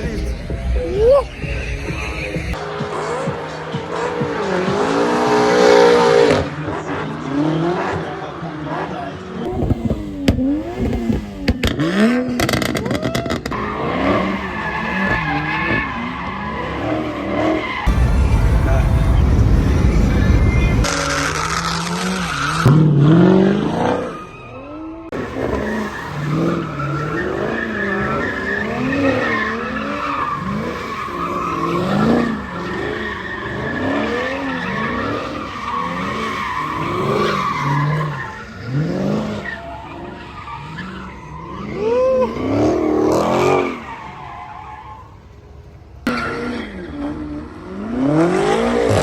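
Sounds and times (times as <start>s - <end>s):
car engine revving: 0.0s - 44.2s
tyres squealing: 25.2s - 45.2s.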